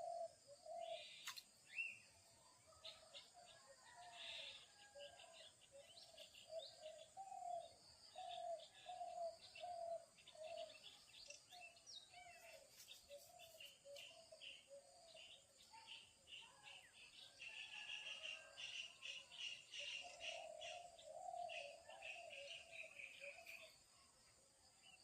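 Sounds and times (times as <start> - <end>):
small birds chirping: 5.6 - 23.8.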